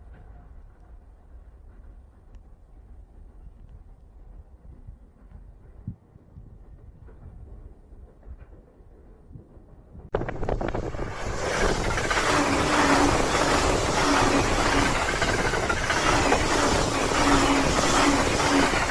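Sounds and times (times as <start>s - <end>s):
low hum: 10.1s - 18.9s
wheel-on-rail rushing noise: 10.1s - 18.9s.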